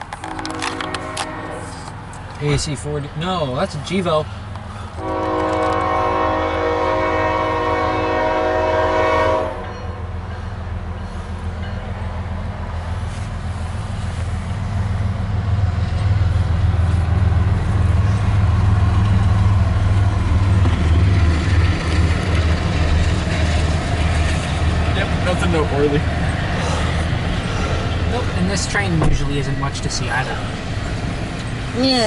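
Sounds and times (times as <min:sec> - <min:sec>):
train rumble: 0:00.0 - 0:32.0
train horn blast: 0:00.2 - 0:01.9, 0:05.0 - 0:10.0.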